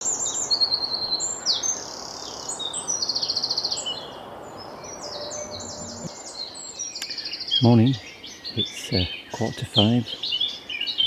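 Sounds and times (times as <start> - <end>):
background hiss: 0.0 - 11.0
songbirds singing: 0.0 - 11.0
rattling bird trill: 5.0 - 6.2.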